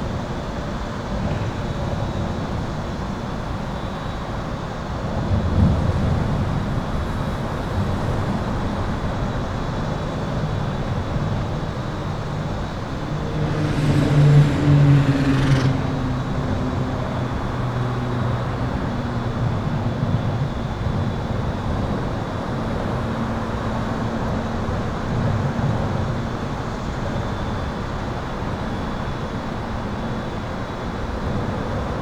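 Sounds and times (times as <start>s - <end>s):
highway traffic rumble: 0.0s - 32.0s
heavy vehicle passing: 5.4s - 26.8s.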